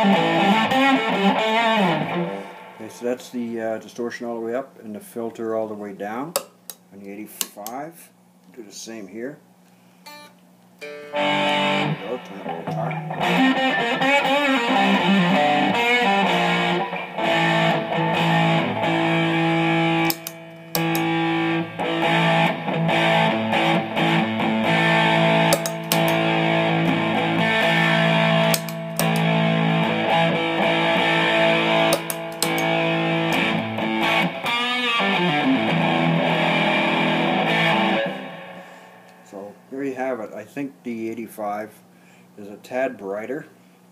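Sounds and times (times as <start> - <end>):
distorted electric guitar chords: 0.0 - 3.1, 10.1 - 39.2.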